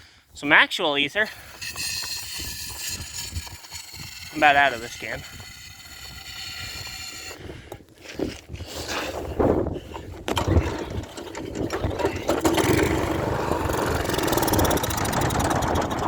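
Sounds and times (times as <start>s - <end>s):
small gas engine sputtering: 1.4s - 7.4s, 9.9s - 16.0s.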